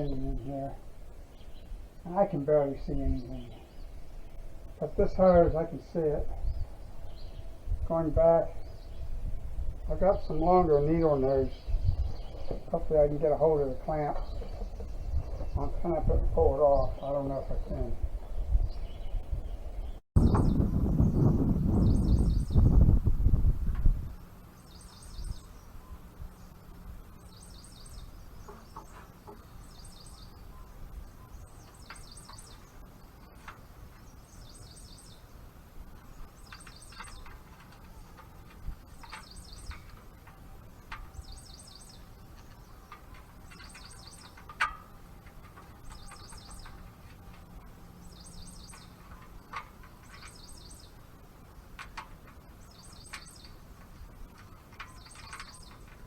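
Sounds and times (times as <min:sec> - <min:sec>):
bird chirping: 0:00.0 - 0:22.9, 0:24.2 - 0:56.0
hand tools tapping on metal: 0:36.4 - 0:51.0, 0:51.6 - 0:56.0.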